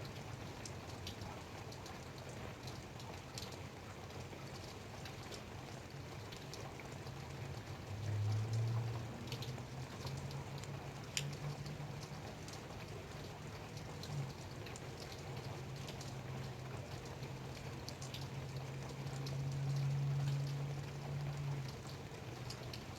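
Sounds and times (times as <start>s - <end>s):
light rain falling: 0.0s - 22.9s
raindrops ticking: 0.0s - 22.9s.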